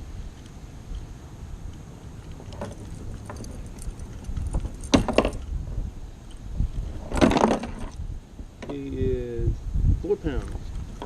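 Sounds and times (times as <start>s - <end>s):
wind rumble on microphone: 0.0s - 11.0s
clattering knocks and rattles in kayak: 2.4s - 5.5s, 6.9s - 8.8s.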